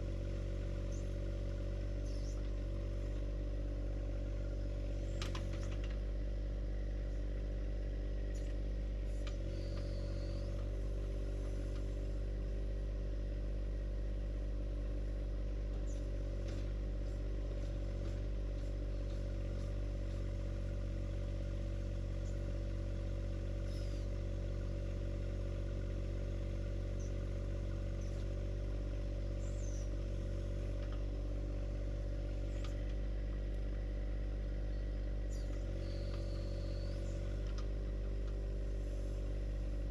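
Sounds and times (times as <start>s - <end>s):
tractor diesel engine running: 0.0s - 39.9s.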